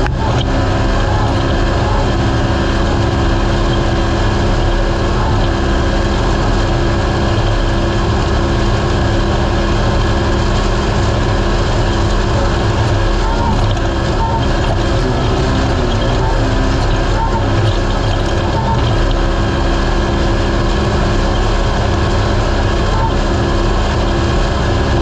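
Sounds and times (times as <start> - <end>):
engine running hard: 0.0 - 25.0
vehicle rumble at speed: 0.0 - 25.0.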